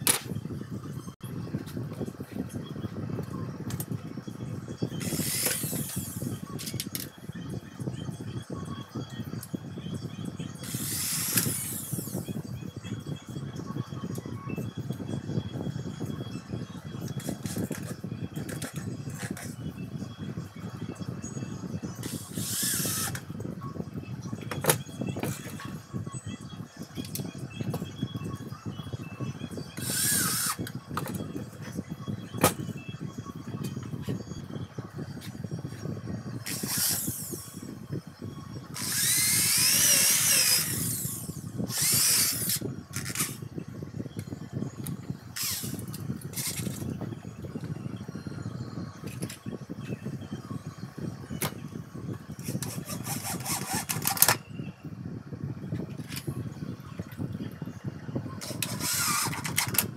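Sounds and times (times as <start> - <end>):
workpiece grinding hiss: 5.0 - 6.3, 10.6 - 12.2, 22.0 - 23.2, 29.8 - 30.6, 36.5 - 37.5, 38.8 - 43.4, 52.4 - 54.3, 58.4 - 59.9
grinding machine humming: 5.0 - 7.0, 38.6 - 43.4.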